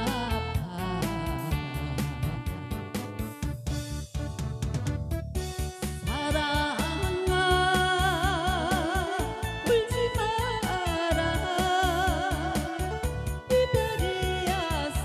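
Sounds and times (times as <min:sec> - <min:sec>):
woman singing: 0:00.0 - 0:02.8, 0:06.0 - 0:15.0
backing band with steady beat: 0:00.0 - 0:15.0.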